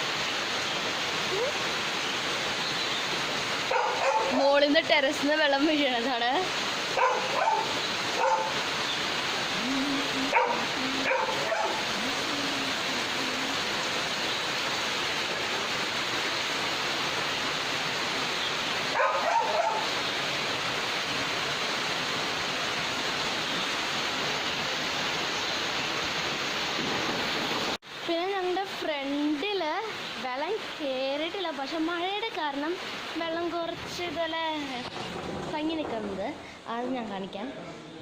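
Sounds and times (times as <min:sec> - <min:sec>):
rainwater pouring off roof: 0:00.0 - 0:37.5
heavy rain: 0:00.0 - 0:37.8
dog barking: 0:03.7 - 0:04.4, 0:06.9 - 0:08.6, 0:10.2 - 0:11.9, 0:18.9 - 0:19.9.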